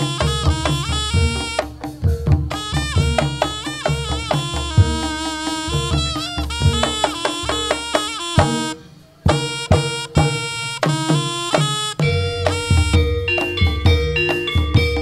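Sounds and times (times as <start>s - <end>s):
hand drum strokes: 0.0s - 15.0s
reedy wind melody: 0.0s - 15.0s.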